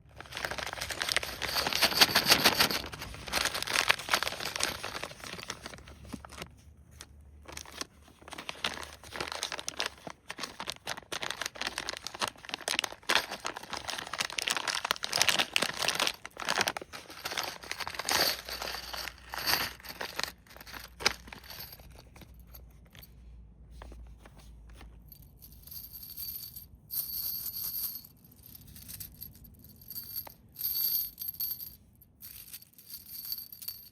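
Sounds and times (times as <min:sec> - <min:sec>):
plastic bag crinkling: 0:00.0 - 0:06.5, 0:07.5 - 0:21.9
nails clinking and rattling: 0:00.2 - 0:05.7, 0:07.5 - 0:23.0, 0:25.0 - 0:33.9.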